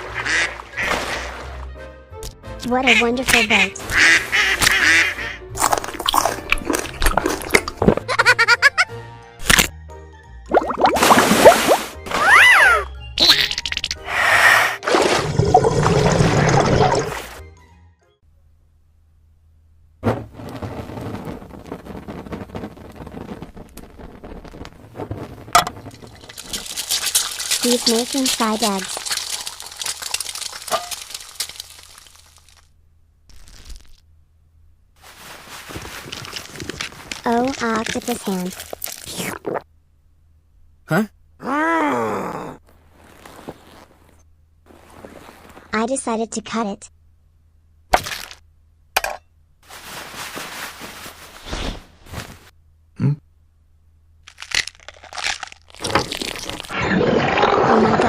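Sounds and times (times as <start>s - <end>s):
eggs sizzling in a pan: 21.3s - 32.7s
food crunching being cut: 26.3s - 32.6s, 54.3s - 56.7s.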